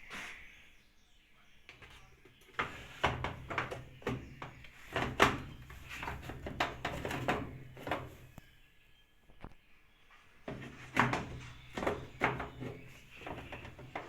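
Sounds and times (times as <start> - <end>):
knocks and rattles: 1.7 - 8.3, 10.4 - 14.0.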